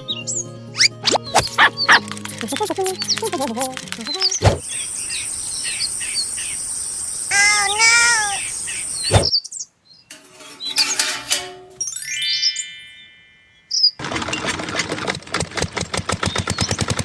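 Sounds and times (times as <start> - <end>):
birds chirping: 0.0 - 11.1.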